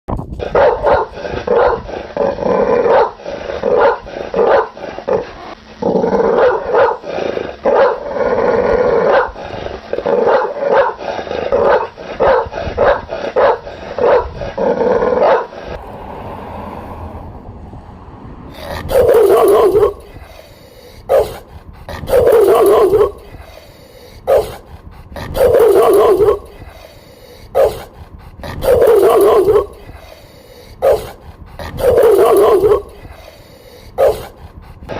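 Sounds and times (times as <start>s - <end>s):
dog barking: 0.4s - 1.9s, 2.8s - 5.2s, 6.3s - 8.0s, 9.0s - 9.4s, 10.1s - 14.4s, 15.2s - 15.5s, 18.6s - 20.2s, 21.0s - 23.4s, 24.2s - 24.6s, 25.2s - 26.6s, 27.5s - 27.9s, 28.5s - 29.8s, 30.8s - 33.2s, 34.0s - 34.4s.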